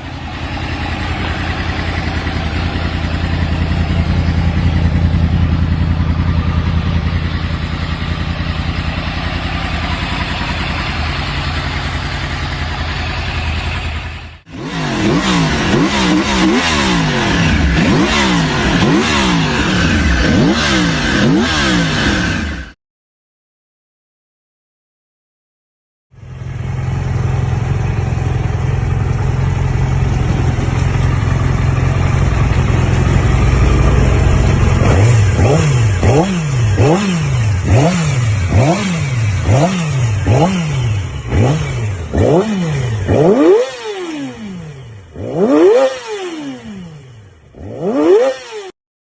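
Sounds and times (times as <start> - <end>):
motorcycle engine idling and revving: 0.0 - 22.8, 26.1 - 48.8.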